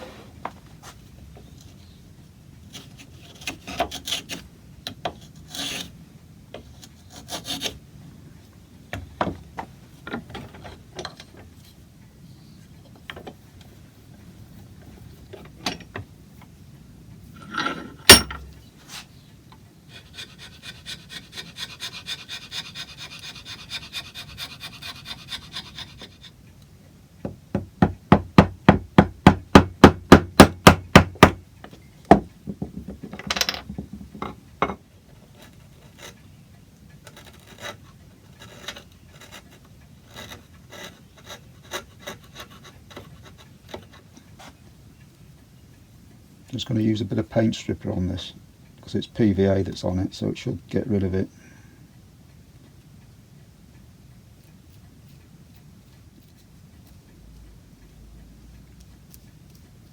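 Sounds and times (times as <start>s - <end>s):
hand tools scraping wood: 0.0s - 1.8s, 2.7s - 4.5s, 5.1s - 6.0s, 6.6s - 7.8s, 19.9s - 26.4s, 35.1s - 36.2s, 37.1s - 44.6s
rasping strokes: 19.9s - 26.4s.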